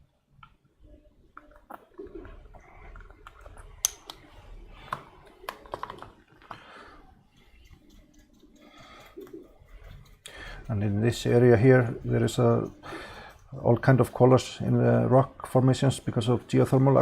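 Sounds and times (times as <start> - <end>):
soft rubbing: 7.0 - 17.0.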